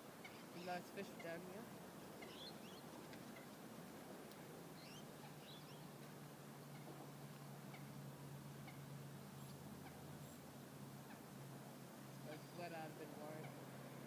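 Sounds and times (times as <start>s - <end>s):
faint bird chirps: 2.1s - 3.6s, 4.7s - 6.0s.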